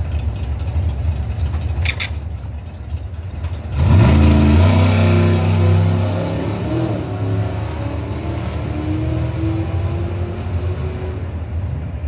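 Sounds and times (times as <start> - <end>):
race car engine revving: 3.6 - 11.4.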